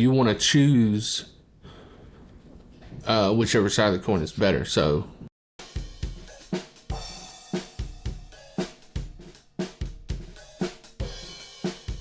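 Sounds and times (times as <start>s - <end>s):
drum kit playing a steady beat: 5.6s - 12.0s.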